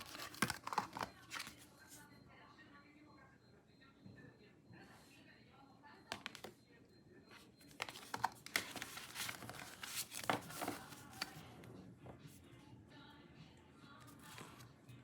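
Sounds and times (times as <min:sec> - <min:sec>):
packaging crinkling and tearing: 0:00.0 - 0:01.6.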